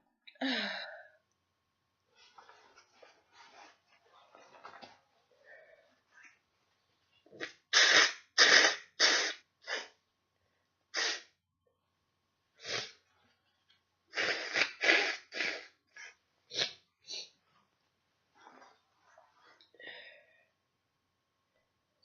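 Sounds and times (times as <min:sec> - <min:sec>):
person sneezing: 0:07.4 - 0:10.0, 0:11.0 - 0:11.3.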